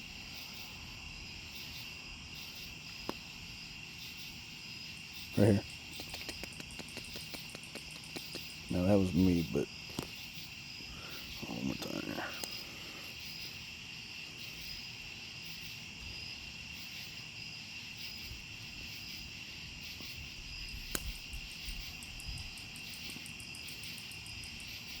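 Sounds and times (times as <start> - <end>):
high-pitched insect trill: 0.0 - 25.0
sharp clicks: 5.6 - 8.7, 20.9 - 21.4.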